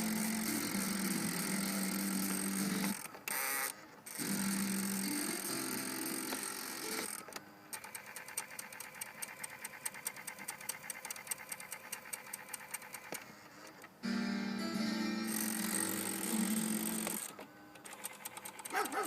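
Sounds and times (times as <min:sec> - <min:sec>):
tape music: 0:00.0 - 0:03.0, 0:14.0 - 0:17.2.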